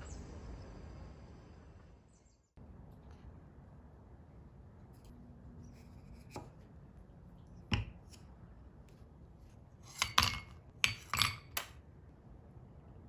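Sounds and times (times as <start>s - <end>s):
kitchen items clinking: 9.9s - 11.7s.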